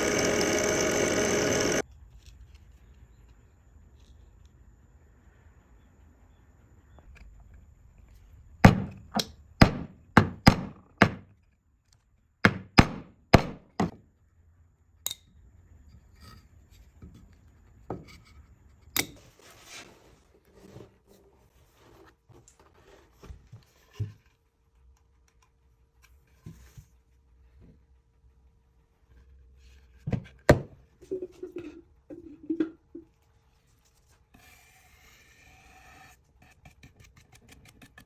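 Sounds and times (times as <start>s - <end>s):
hammering on wood: 9.6s - 11.3s, 12.5s - 14.0s.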